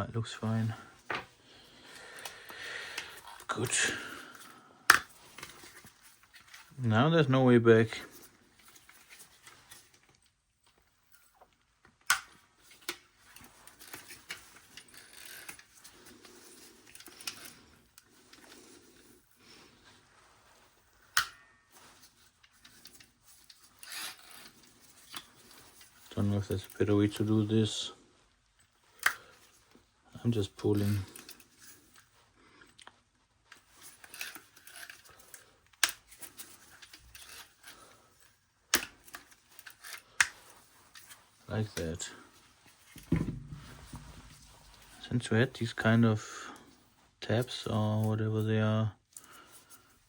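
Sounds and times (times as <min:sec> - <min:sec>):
rubber rubbing and scraping: 0:39.4 - 0:45.0.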